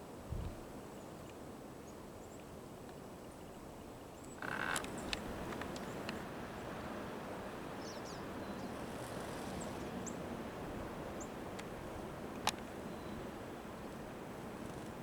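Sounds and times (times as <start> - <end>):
steady background hiss: 0.0 - 15.0
faint click: 4.2 - 6.2, 12.3 - 12.7.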